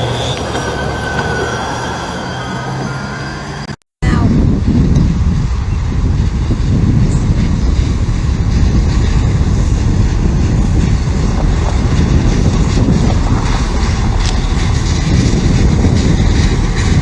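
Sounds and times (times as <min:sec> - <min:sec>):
rail vehicle rumbling past: 0:00.0 - 0:17.0
wind buffeting microphone: 0:04.0 - 0:17.0.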